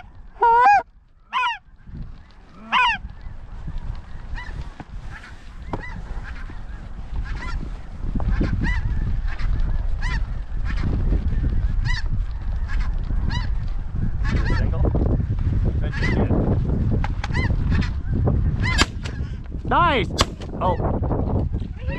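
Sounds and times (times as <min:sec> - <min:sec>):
snow geese yelping: 0:00.0 - 0:01.6, 0:02.3 - 0:03.2, 0:04.2 - 0:07.7, 0:08.3 - 0:10.9
wind buffeting microphone: 0:00.0 - 0:21.9.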